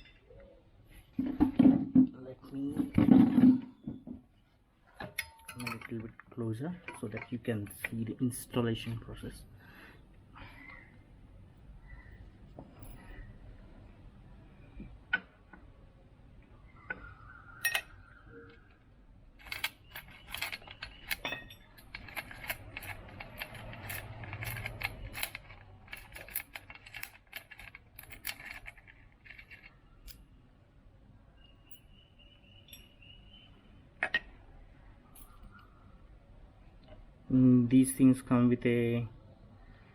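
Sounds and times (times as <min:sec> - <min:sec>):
metal bolts and nuts clinking: 0:05.0 - 0:08.1, 0:17.6 - 0:18.0, 0:19.4 - 0:30.2.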